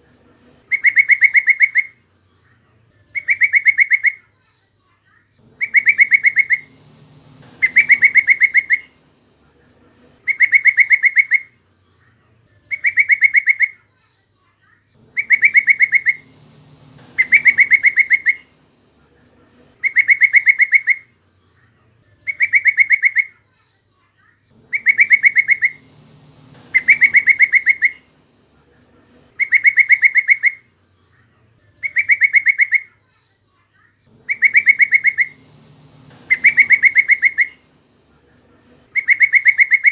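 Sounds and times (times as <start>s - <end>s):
bird chattering call: 0.6s - 2.0s, 3.2s - 4.2s, 5.4s - 9.2s, 10.0s - 11.6s, 12.7s - 13.8s, 15.0s - 18.8s, 19.5s - 21.1s, 22.3s - 23.4s, 24.6s - 28.4s, 29.1s - 30.7s, 31.8s - 32.9s, 34.1s - 38.0s, 38.6s - 39.9s.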